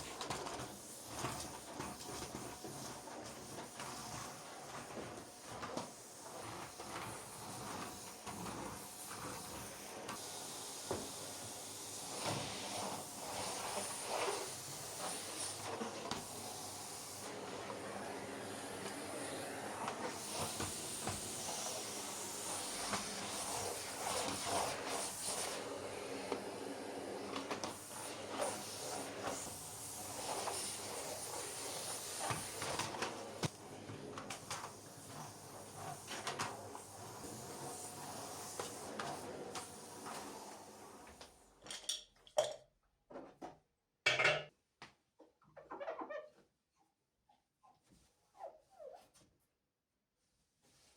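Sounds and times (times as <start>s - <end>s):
dishes clattering: 44.1s - 44.5s.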